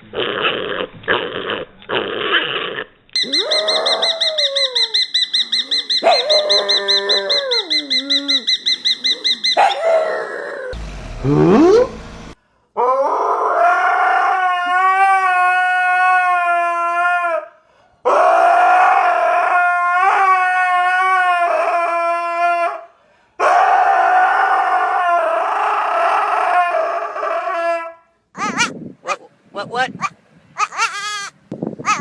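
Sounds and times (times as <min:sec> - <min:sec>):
dog howling: 0:03.2 - 0:05.0, 0:06.0 - 0:08.5, 0:09.6 - 0:10.8, 0:12.8 - 0:17.5, 0:18.1 - 0:28.6.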